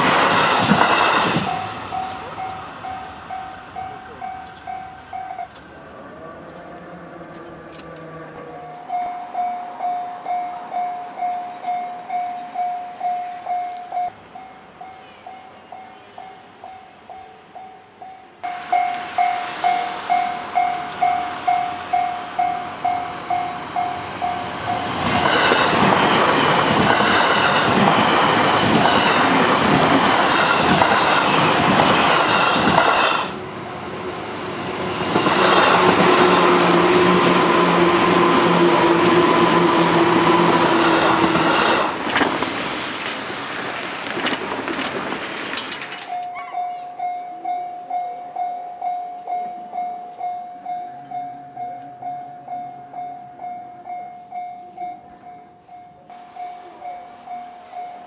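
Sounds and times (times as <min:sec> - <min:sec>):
level-crossing warning bell: 0:00.0 - 0:05.7, 0:08.5 - 0:31.5, 0:45.9 - 0:58.0
electric train passing: 0:00.0 - 0:58.0
rail-joint clicks: 0:00.3 - 0:05.8, 0:08.7 - 0:33.3, 0:40.6 - 0:48.2.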